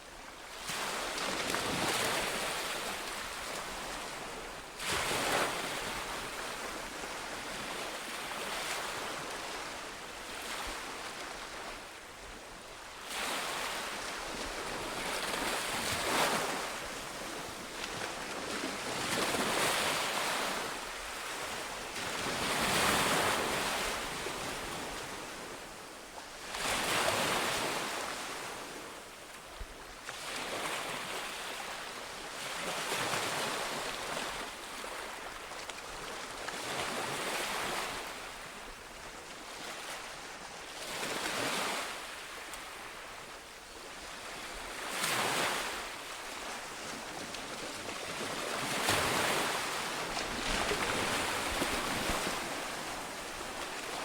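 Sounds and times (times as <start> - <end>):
waves breaking: 44.9 - 54.0.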